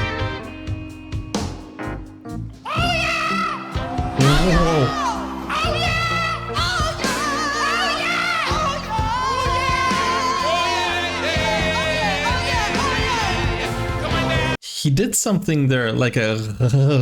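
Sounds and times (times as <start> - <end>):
live rock-soul band: 0.0 - 14.6
person singing with vibrato: 2.7 - 14.6.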